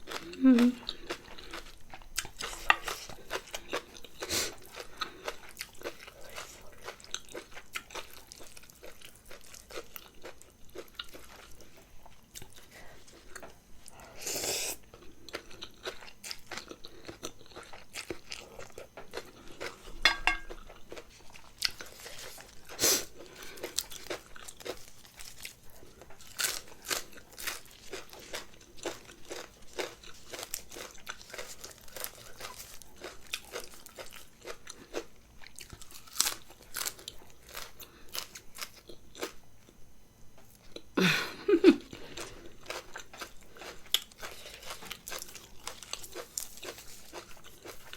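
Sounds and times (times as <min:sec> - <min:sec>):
chewing and crunching food: 0:00.0 - 0:47.9.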